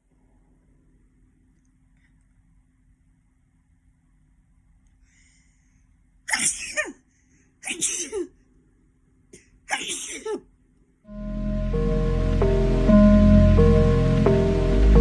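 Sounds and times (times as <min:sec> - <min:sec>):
person sneezing: 0:06.3 - 0:07.0, 0:07.6 - 0:08.4, 0:09.7 - 0:10.5
soft new-age music with drone: 0:11.1 - 0:15.0.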